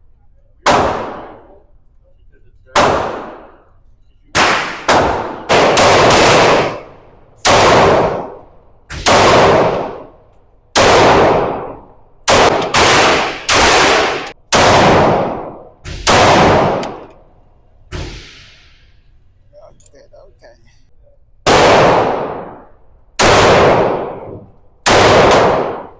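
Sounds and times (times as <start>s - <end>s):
echoing gunshots: 0.6s - 1.6s, 2.7s - 3.7s, 4.3s - 17.1s, 17.9s - 19.0s, 21.4s - 25.9s.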